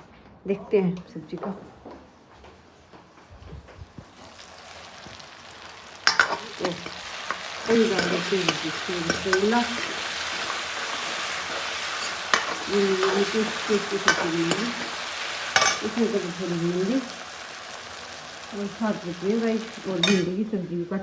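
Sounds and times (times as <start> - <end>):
onions and tomatoes sizzling in oil: 3.9 - 21.0.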